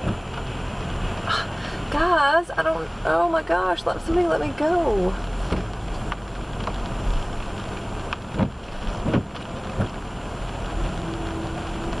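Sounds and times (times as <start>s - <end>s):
car thumps: 0.0s - 0.5s, 5.4s - 6.9s, 8.1s - 10.0s
heavy rain and water: 0.0s - 12.0s.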